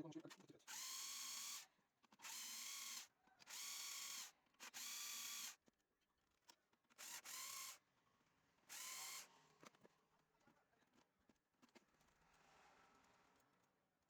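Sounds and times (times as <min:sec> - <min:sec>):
small electric motor whirring: 0:00.7 - 0:05.6, 0:07.0 - 0:07.8, 0:08.7 - 0:09.3.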